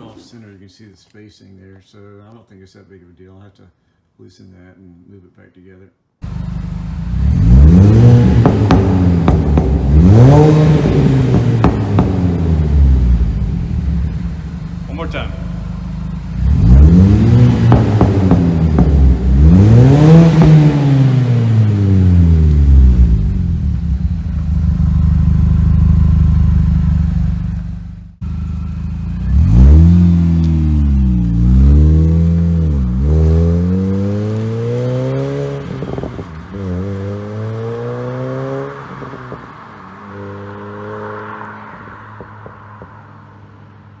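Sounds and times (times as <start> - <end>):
car engine revving: 6.2 - 43.7.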